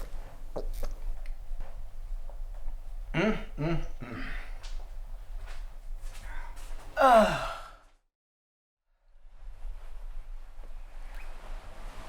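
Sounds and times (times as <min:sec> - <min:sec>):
person humming: 0:03.2 - 0:04.4
breathy sigh: 0:03.2 - 0:04.6, 0:06.2 - 0:07.9.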